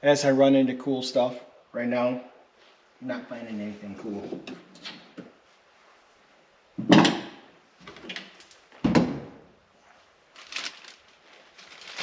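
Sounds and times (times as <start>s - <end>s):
knocks and clunks of car parts: 6.8s - 9.4s.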